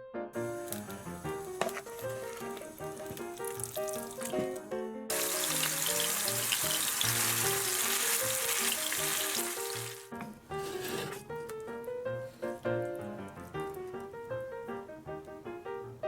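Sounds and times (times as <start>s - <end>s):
background piano music: 0.0s - 16.0s
patties sizzling in a pan: 0.4s - 10.2s.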